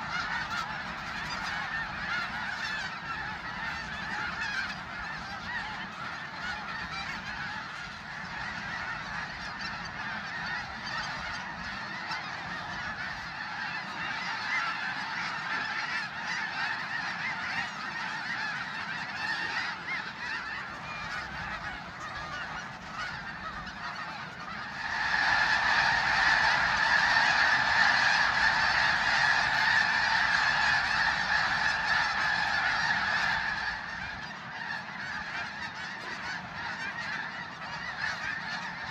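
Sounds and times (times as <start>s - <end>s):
geese honking: 0.0s - 38.9s.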